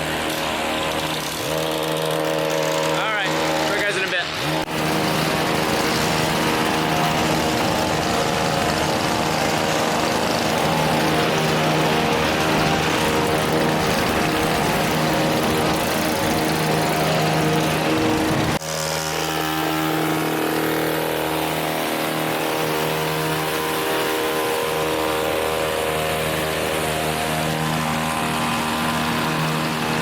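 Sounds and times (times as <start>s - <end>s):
hedge trimmer engines running: 0.0s - 30.0s.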